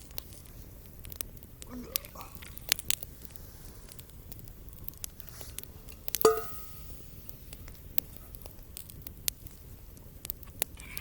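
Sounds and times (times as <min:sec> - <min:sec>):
sharp ringing clink: 0:06.2 - 0:07.0.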